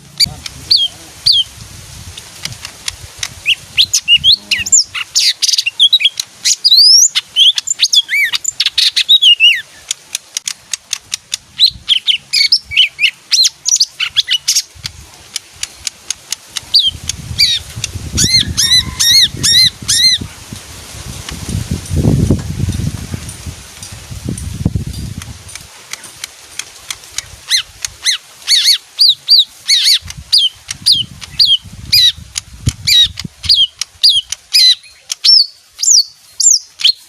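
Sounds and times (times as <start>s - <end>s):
bird singing whistled notes: 3.4s - 9.9s, 11.6s - 14.7s, 32.9s - 37.0s.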